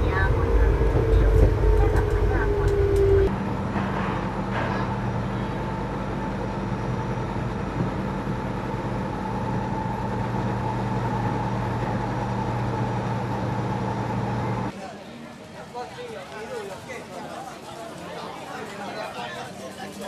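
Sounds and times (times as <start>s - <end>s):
vehicle humming: 0.0s - 14.7s.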